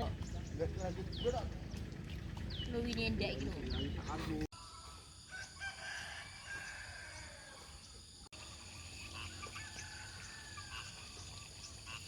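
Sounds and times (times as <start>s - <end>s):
low background rumble: 0.0s - 4.5s.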